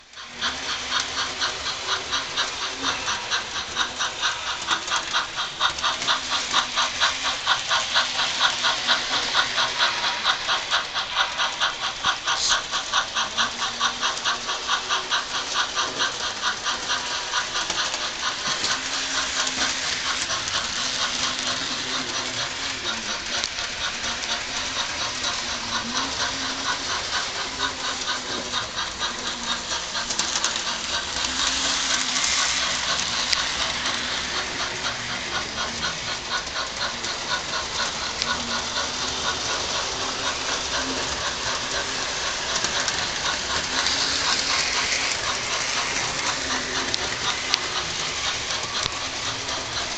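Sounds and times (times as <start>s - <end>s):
steam locomotive chuffing: 0.0s - 49.9s.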